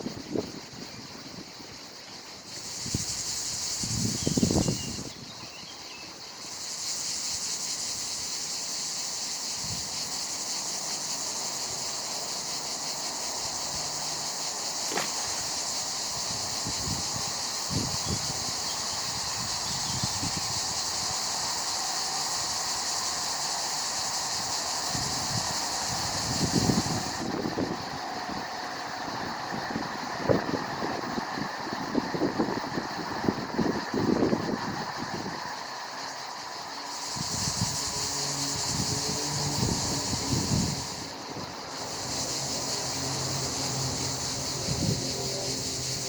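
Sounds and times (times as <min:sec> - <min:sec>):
cicada buzzing: 0:00.0 - 0:46.0
dull knocks: 0:14.9 - 0:15.4.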